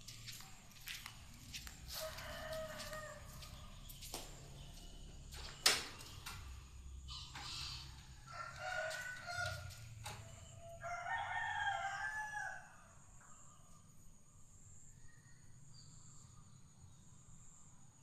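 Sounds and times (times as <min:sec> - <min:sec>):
rooster crowing: 0:01.9 - 0:03.8, 0:07.1 - 0:13.0.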